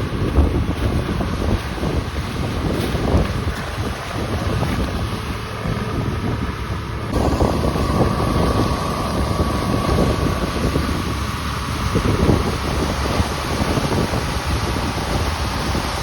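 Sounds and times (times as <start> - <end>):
harvest machinery running: 0.0 - 16.0
wind buffeting microphone: 0.0 - 16.0
steady whine: 5.1 - 16.0.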